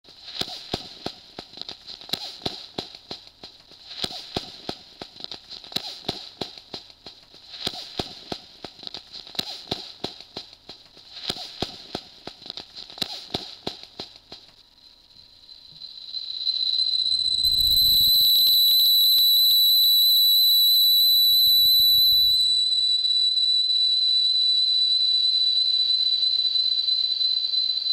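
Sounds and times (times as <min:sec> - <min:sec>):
electronic hiss: 0:00.1 - 0:27.9
electronic crackling clicks: 0:07.6 - 0:23.9.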